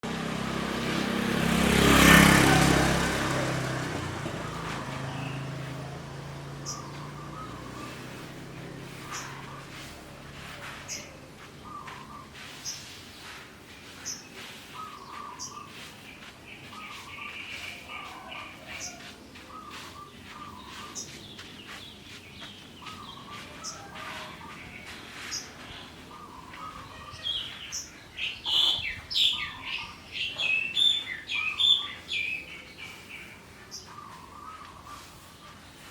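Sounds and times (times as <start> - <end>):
vehicle driving past: 0.0 - 27.9
birds chirping: 0.6 - 35.9.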